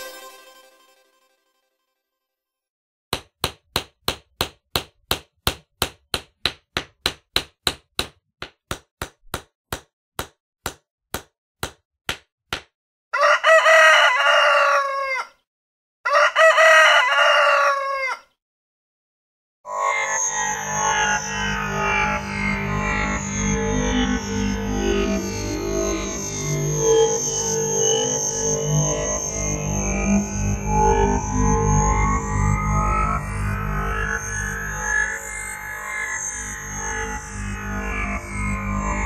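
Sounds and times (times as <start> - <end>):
sharp knocks: 3.1 - 12.8
rooster crowing: 13.1 - 15.4, 16.0 - 18.3.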